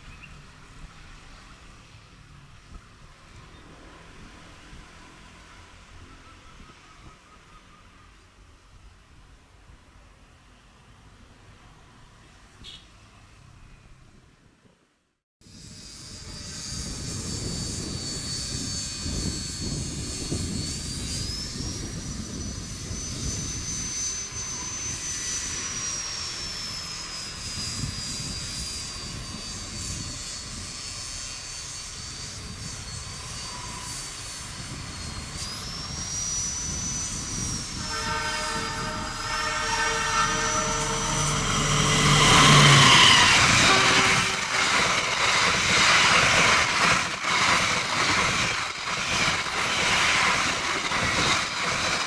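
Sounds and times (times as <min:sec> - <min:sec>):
high whine: 0:15.5 - 0:52.0
train rumbling: 0:16.1 - 0:52.0
multi-tone train horn: 0:37.6 - 0:44.8.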